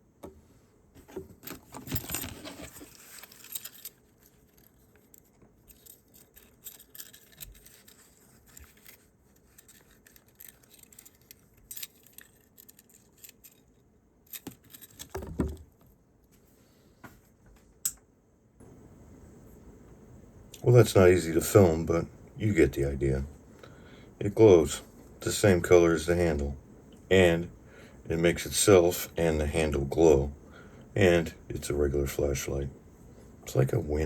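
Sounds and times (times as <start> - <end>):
small metal objects jangling: 1.4 - 15.1.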